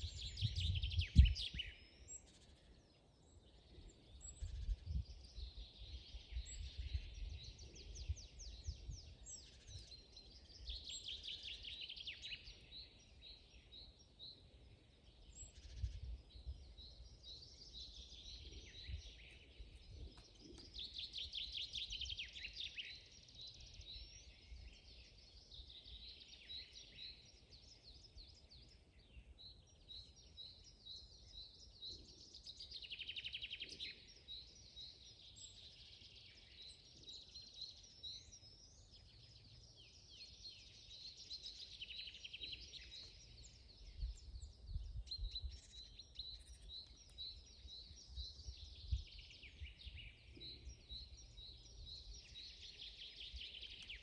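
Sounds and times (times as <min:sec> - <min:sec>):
songbirds chirping and trilling: 0:00.0 - 0:54.0.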